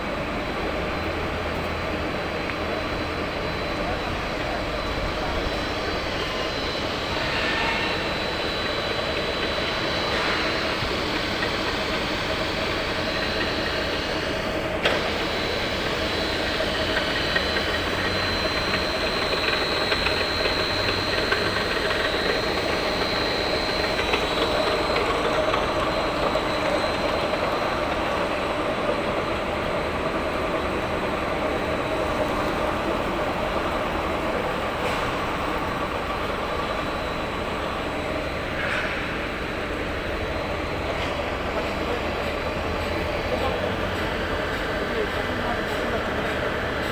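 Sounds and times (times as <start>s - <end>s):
lathe mechanical clatter: 0.0s - 46.9s.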